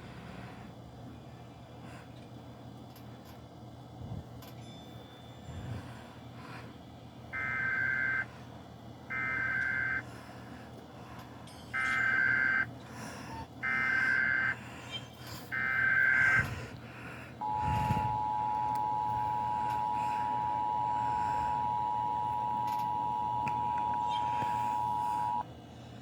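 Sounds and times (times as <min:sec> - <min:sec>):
digital data tone bursts: 0:11.8 - 0:12.7, 0:17.4 - 0:25.4
two-tone attention signal: 0:17.4 - 0:25.4.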